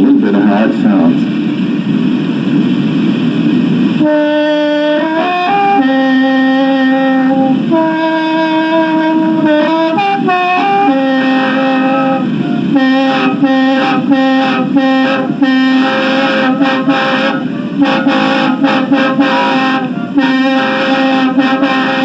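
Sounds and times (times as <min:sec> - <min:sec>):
bamboo mouth organ chords: 0:04.6 - 0:22.0.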